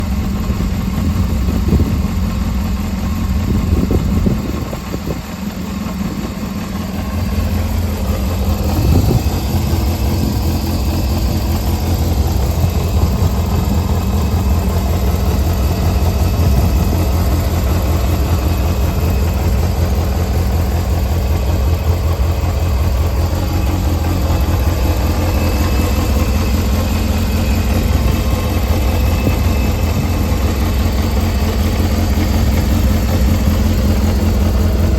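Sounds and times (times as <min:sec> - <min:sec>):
motorcycle engine idling: 0:00.0 - 0:34.9.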